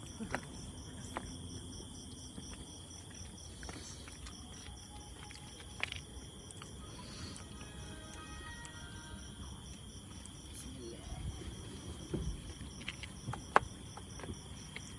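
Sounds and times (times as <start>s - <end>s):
faint steady hum: 0.0s - 14.9s
insects chirping: 0.0s - 14.9s.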